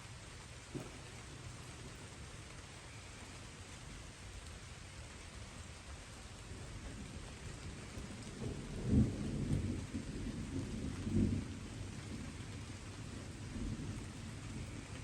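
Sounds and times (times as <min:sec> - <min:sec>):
steady light rain: 0:00.0 - 0:15.0
distant thunder rumbling: 0:00.6 - 0:02.5, 0:06.6 - 0:15.0.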